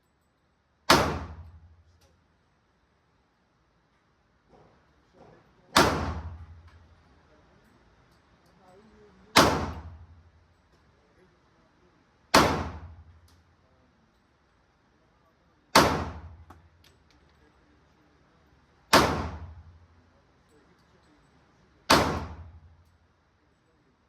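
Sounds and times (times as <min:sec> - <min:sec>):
pistol shots echoing indoors: 0:00.8 - 0:01.8, 0:05.7 - 0:06.9, 0:09.3 - 0:10.2, 0:12.3 - 0:13.3, 0:15.7 - 0:16.6, 0:18.8 - 0:19.8, 0:21.8 - 0:22.8.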